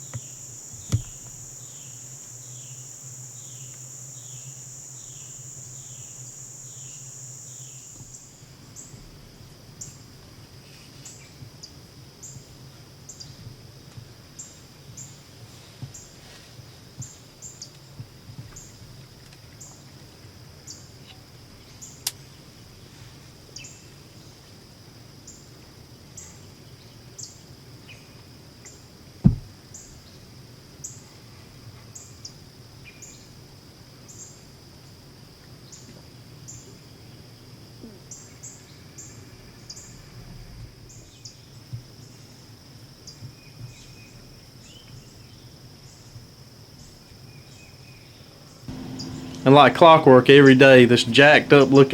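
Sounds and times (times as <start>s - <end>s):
insects buzzing: 0.0s - 9.2s, 29.3s - 30.2s, 37.7s - 51.9s
sharp click: 0.1s - 1.4s.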